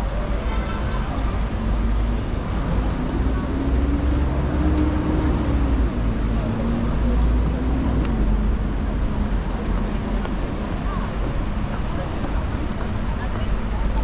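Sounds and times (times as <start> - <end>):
traffic rumble: 0.0 - 14.0
vehicle passing by: 1.6 - 9.8.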